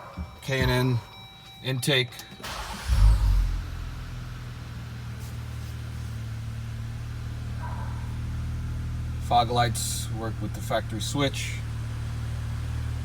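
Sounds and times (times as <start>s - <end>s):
car engine starting and idling: 0.0s - 13.0s.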